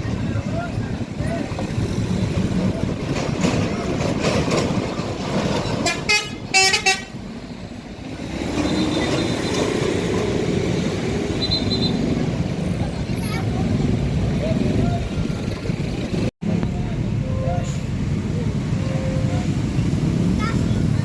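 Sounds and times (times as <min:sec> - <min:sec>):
passing traffic: 0:00.0 - 0:21.0
truck horn blasts: 0:05.8 - 0:07.2.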